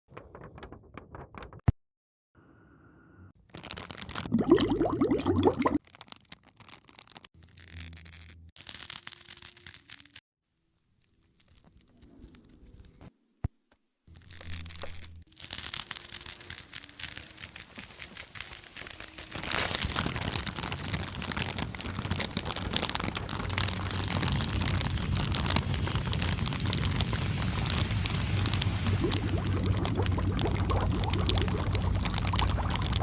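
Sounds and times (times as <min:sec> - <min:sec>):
match striking and burning: 0:14.1 - 0:33.0.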